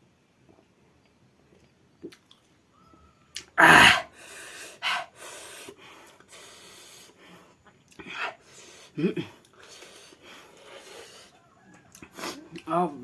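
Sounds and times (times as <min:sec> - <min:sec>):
loud breath burst: 0:03.6 - 0:09.0, 0:09.6 - 0:11.4
person hissing breaths: 0:03.6 - 0:11.4, 0:12.1 - 0:12.5.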